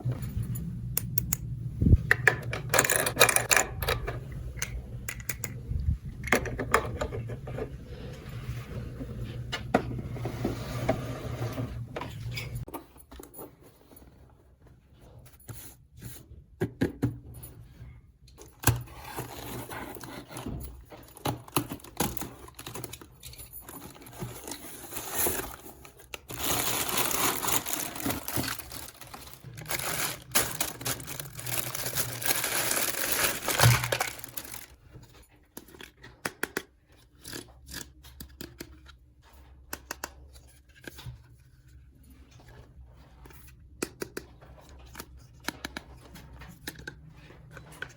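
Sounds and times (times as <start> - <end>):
plastic packaging crinkling and tearing: 21.1 - 34.8.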